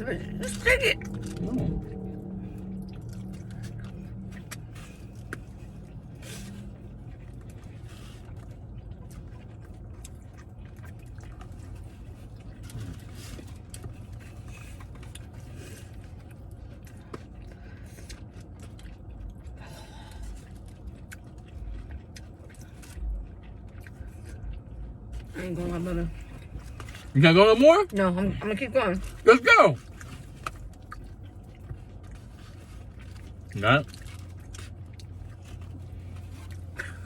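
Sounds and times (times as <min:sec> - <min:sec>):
low hum: 0:00.0 - 0:29.2
people chewing food: 0:00.0 - 0:37.0.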